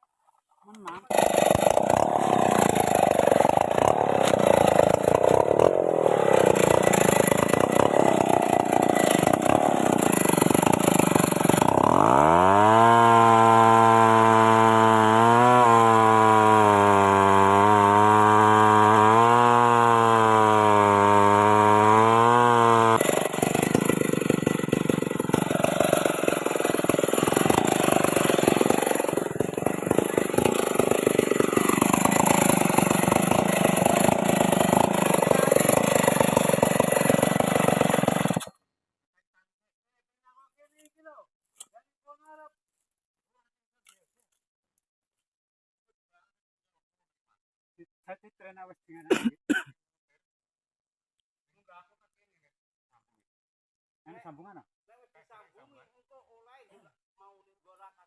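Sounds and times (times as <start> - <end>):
chainsaw revving: 0.8 - 38.5.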